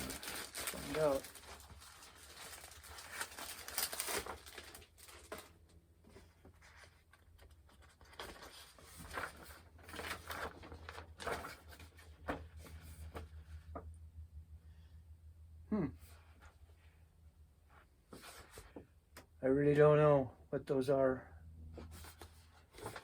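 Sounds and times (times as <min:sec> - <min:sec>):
packaging rustling and crinkling: 0:00.0 - 0:05.6, 0:06.2 - 0:13.4, 0:21.9 - 0:23.0
steady low hum: 0:09.0 - 0:23.0.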